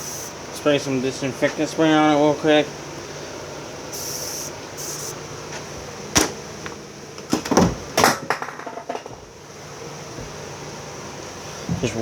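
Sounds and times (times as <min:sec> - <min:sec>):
aerosol spray hissing: 0:00.0 - 0:00.4, 0:03.9 - 0:05.2
knocks and handling noises: 0:05.5 - 0:09.3.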